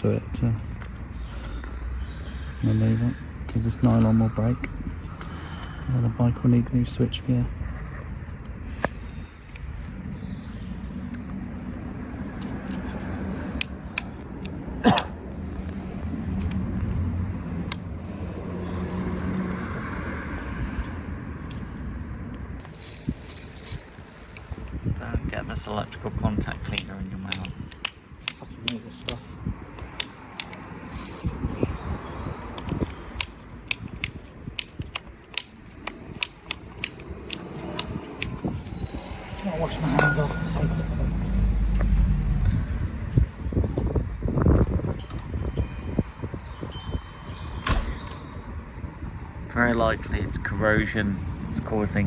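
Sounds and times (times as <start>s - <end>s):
switch clicking: 26.7s - 30.6s, 32.6s - 38.8s.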